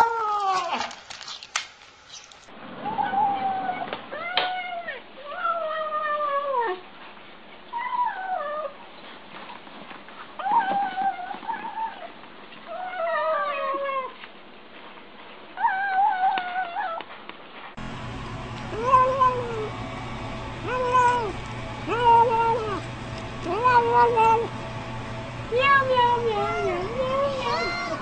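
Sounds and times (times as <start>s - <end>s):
cat meowing: 20.6s - 22.8s, 25.6s - 28.0s.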